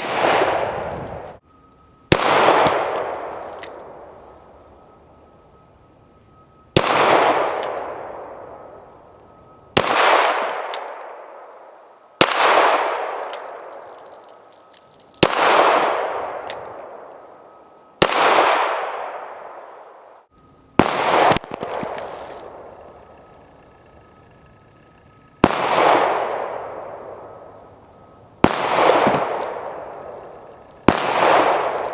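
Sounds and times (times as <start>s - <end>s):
revolver shots echoing: 25.2s - 31.9s.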